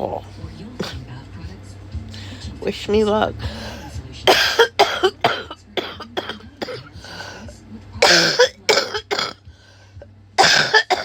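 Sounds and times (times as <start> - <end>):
woman coughing: 4.3 - 9.4, 10.4 - 11.0.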